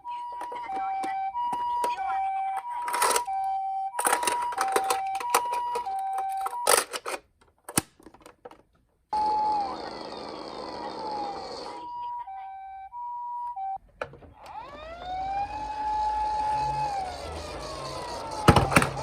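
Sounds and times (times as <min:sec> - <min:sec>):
toy electronic hi-lo siren: 0:00.0 - 0:06.9, 0:09.1 - 0:13.8, 0:14.4 - 0:19.0
plastic toy clicks and rattles: 0:00.4 - 0:03.3, 0:04.0 - 0:08.7
electronic siren sliding downward: 0:09.1 - 0:13.8, 0:14.4 - 0:19.0.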